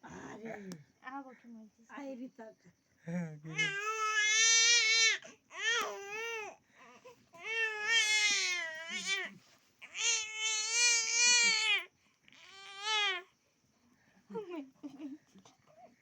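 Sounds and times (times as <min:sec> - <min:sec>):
baby crying: 0:03.5 - 0:06.5, 0:07.4 - 0:09.3, 0:09.9 - 0:11.8.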